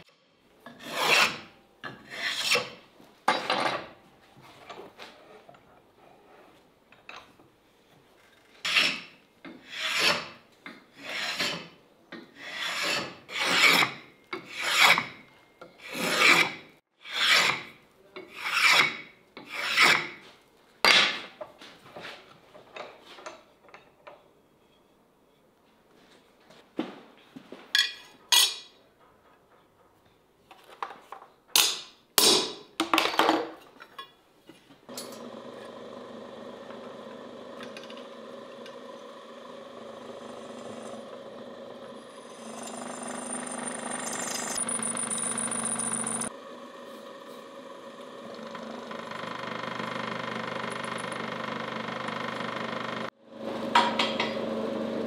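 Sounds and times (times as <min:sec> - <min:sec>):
machine hum with held tone: 0:37.6 - 0:53.0.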